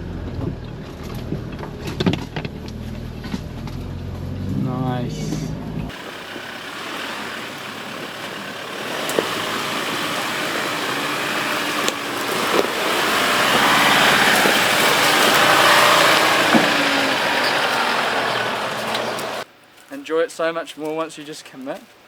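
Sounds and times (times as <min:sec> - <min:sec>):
vehicle engine running: 0:05.6 - 0:19.4
tyre and track noise: 0:05.9 - 0:20.0.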